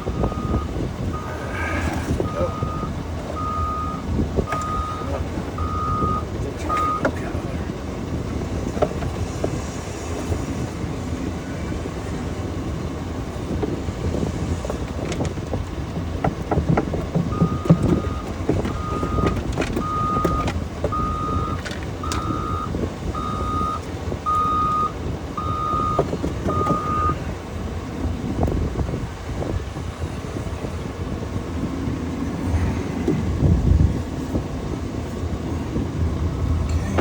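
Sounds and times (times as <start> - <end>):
backup alarm beeping: 0.0 - 1.5, 2.2 - 7.1, 17.3 - 27.2
low engine rumble: 0.0 - 37.0.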